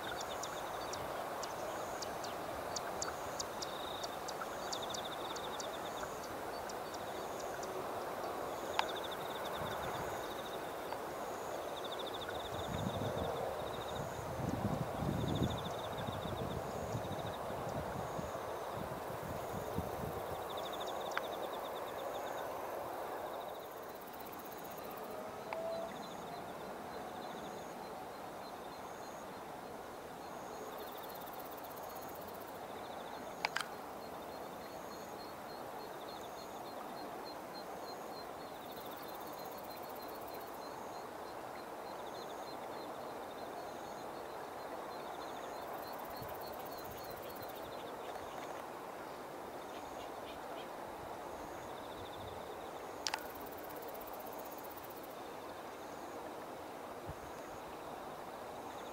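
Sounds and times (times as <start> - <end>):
insects trilling: 0.0 - 58.9.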